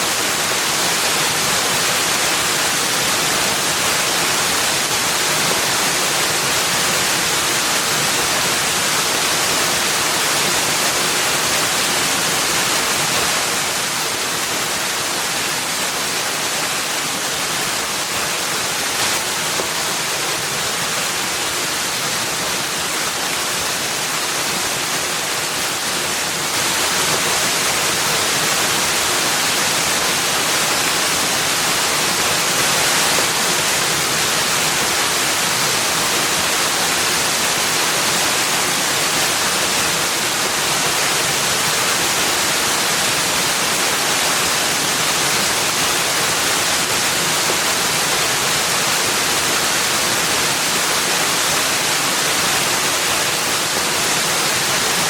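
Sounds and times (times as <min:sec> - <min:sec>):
rushing water: 0:00.0 - 0:55.0.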